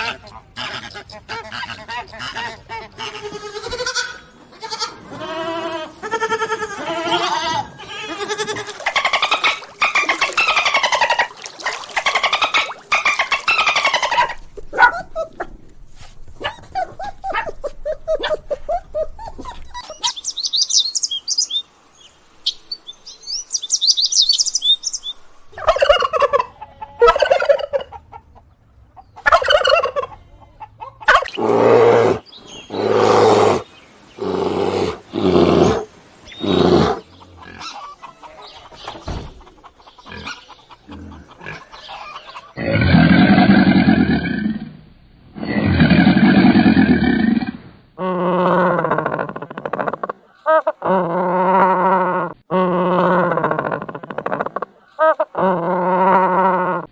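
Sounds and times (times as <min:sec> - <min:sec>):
farm animal calls: 0:00.0 - 0:15.4, 0:25.0 - 0:44.1.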